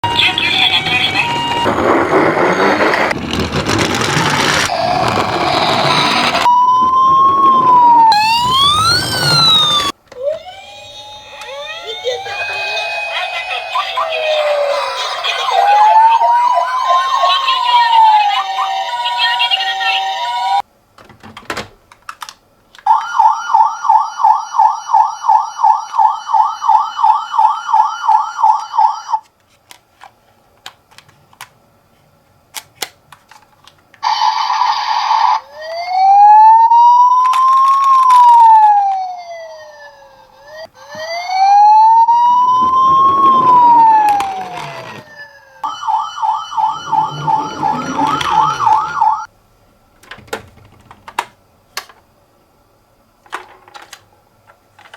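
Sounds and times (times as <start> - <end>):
toy electronic siren: 0.0 - 3.2, 4.2 - 20.6, 22.9 - 29.3, 34.0 - 49.3
toy wheels rattling: 2.2 - 6.5.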